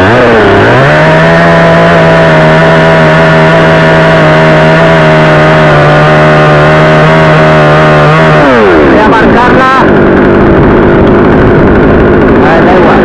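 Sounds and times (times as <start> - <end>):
chainsaw cutting branch: 0.0 - 8.9.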